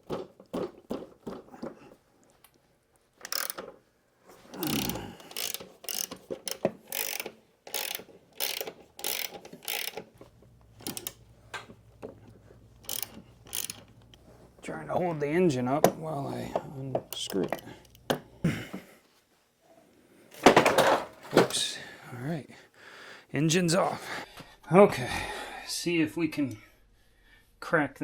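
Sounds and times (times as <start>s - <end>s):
socket ratchet clicking: 3.2s - 3.8s, 4.6s - 11.8s, 12.7s - 14.2s, 15.7s - 18.3s.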